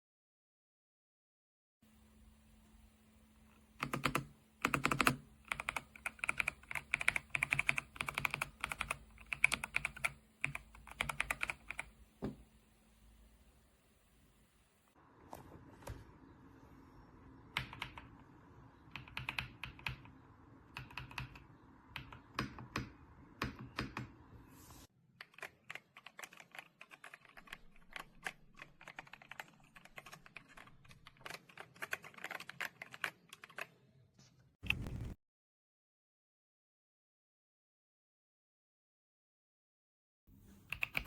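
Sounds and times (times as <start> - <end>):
low background hum: 1.8 - 33.7
mechanical keyboard typing: 3.8 - 12.0, 17.6 - 18.2, 18.9 - 24.1, 25.2 - 33.8, 40.7 - 41.0.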